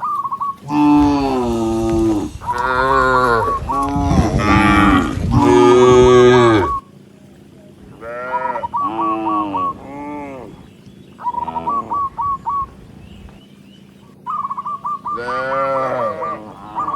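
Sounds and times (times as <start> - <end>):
cattle mooing: 0.6 - 6.8, 15.2 - 16.9.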